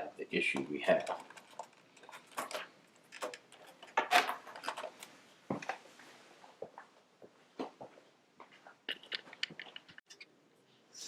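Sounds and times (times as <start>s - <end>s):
laptop parts clicking and knocking: 0.5s - 5.0s, 8.9s - 10.1s.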